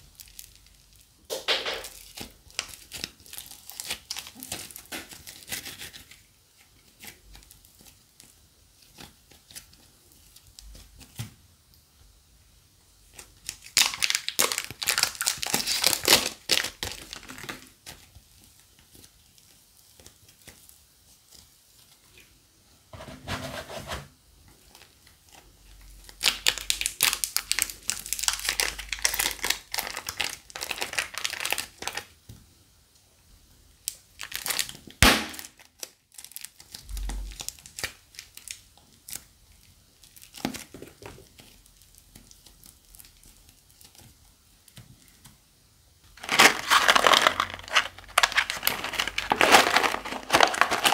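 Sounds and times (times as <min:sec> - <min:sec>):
crunchy slime crackling: 0:00.0 - 0:06.2, 0:13.0 - 0:22.2, 0:24.6 - 0:32.2, 0:33.9 - 0:45.3, 0:46.1 - 0:50.9.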